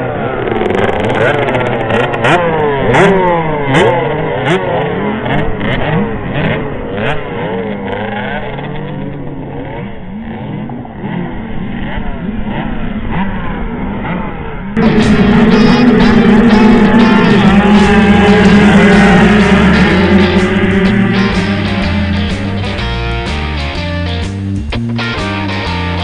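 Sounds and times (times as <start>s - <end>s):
motocross bike engines revving: 0.0s - 26.0s
loud music: 14.8s - 26.0s.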